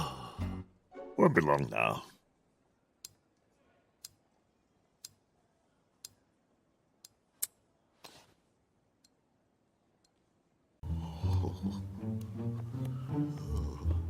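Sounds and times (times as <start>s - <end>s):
faint clock ticking: 3.0s - 3.4s, 4.0s - 5.4s, 6.0s - 6.4s.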